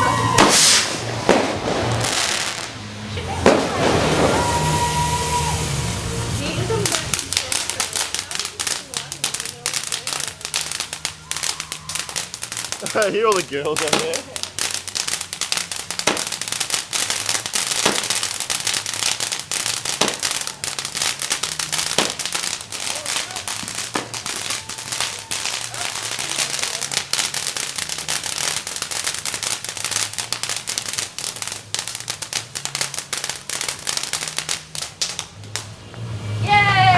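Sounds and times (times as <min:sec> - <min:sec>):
loud firecracker cracks: 0:00.0 - 0:05.6, 0:06.8 - 0:35.8
firecrackers crackling: 0:00.0 - 0:36.9.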